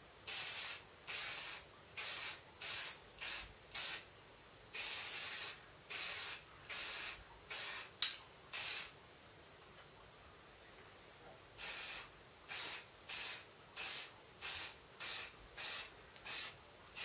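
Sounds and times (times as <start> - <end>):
aerosol spray can hissing: 11.6 - 16.6.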